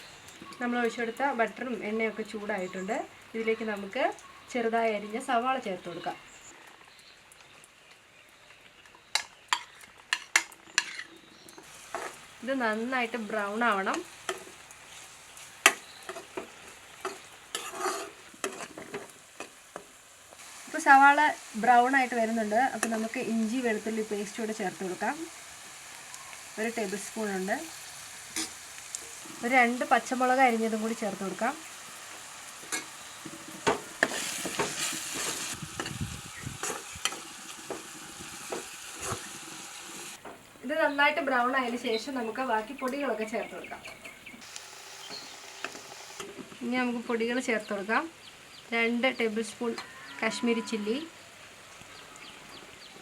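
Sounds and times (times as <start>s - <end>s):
onions sizzling: 0.0s - 47.8s
utensil scraping and knocking pan: 15.7s - 19.2s, 32.7s - 36.0s.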